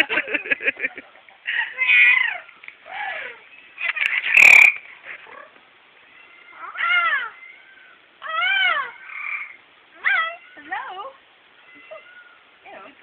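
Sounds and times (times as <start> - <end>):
parrot meow-like calls: 1.8 - 4.7, 6.1 - 10.7, 11.6 - 12.5.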